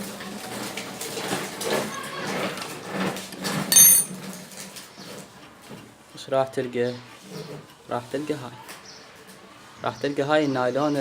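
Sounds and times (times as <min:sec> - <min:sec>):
sharp ringing metal clink: 0:03.7 - 0:04.2.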